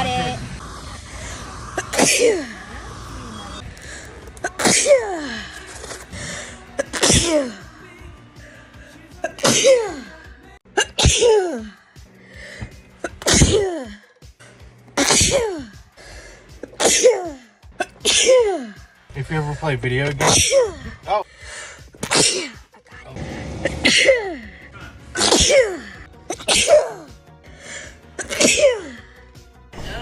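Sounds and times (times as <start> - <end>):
person sneezing: 1.8 - 2.5, 4.4 - 6.0, 6.8 - 7.6, 9.2 - 10.1, 10.8 - 11.7, 13.0 - 14.0, 15.0 - 15.8, 16.6 - 18.8, 20.2 - 20.9, 22.0 - 22.6, 25.1 - 27.1, 28.2 - 29.0.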